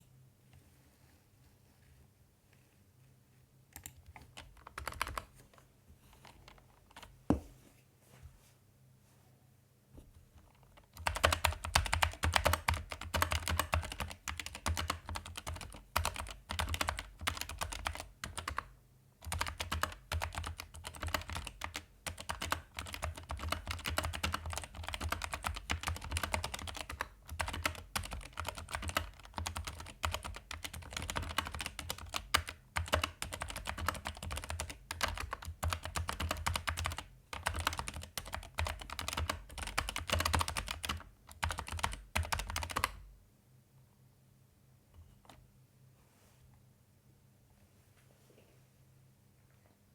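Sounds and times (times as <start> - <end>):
mechanical keyboard typing: 3.8 - 5.3, 10.5 - 43.0.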